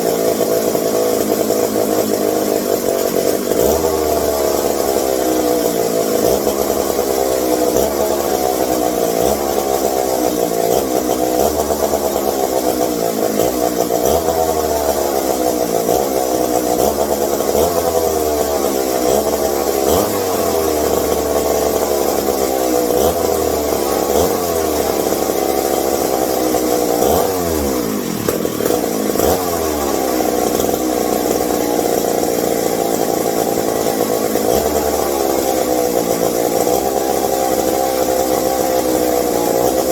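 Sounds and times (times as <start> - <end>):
chainsaw engine running unevenly: 0.0 - 39.9.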